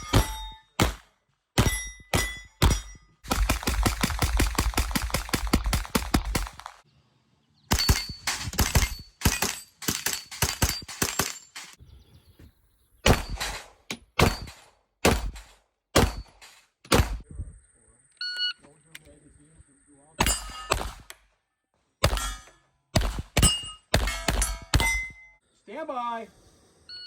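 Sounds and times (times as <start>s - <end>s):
submachine gun firing bursts: 3.2s - 6.8s, 7.7s - 11.8s.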